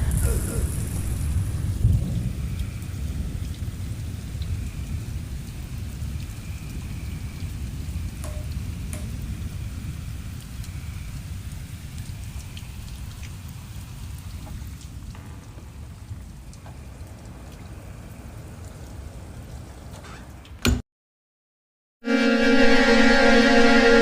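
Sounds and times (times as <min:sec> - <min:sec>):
low rumble: 0:00.0 - 0:04.7
rain drop ticks: 0:00.0 - 0:20.6
steady rainfall: 0:00.0 - 0:20.6.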